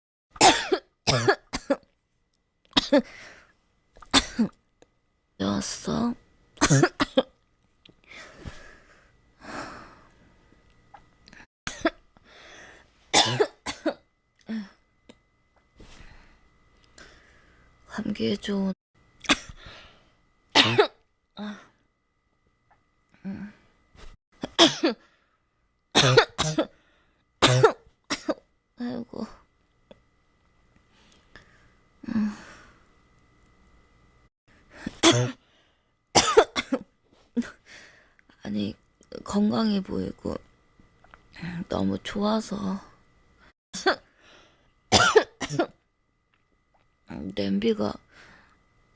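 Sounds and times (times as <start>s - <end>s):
girl coughing: 0.4s - 1.8s, 2.8s - 3.1s, 4.1s - 4.6s, 6.6s - 7.3s, 11.7s - 12.0s, 13.2s - 14.0s, 19.3s - 19.6s, 20.6s - 21.6s, 24.4s - 25.0s, 26.0s - 26.7s, 27.4s - 28.4s, 34.9s - 35.4s, 36.2s - 36.8s, 43.8s - 44.0s, 44.9s - 45.8s
breathing: 3.0s - 3.6s, 8.0s - 10.5s, 12.2s - 13.0s, 15.8s - 17.8s, 19.5s - 20.2s, 25.0s - 25.4s, 26.7s - 27.3s, 30.9s - 32.9s, 34.5s - 36.0s, 37.6s - 38.2s, 44.1s - 44.8s, 48.1s - 48.6s.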